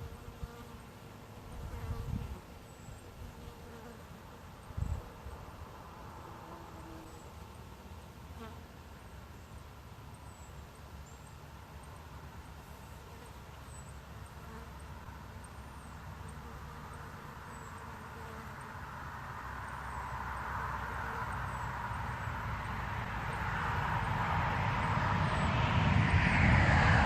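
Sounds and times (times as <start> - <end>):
distant vehicle rumble: 18.8 - 27.0.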